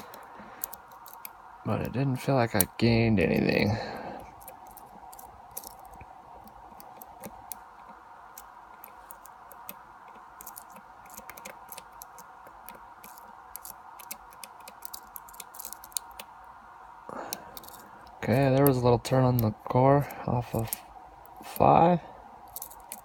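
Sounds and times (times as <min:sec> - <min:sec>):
lock picks clicking: 0:00.0 - 0:01.4, 0:04.3 - 0:07.6, 0:08.3 - 0:16.3, 0:22.4 - 0:23.0
faint steady hum: 0:00.0 - 0:23.0.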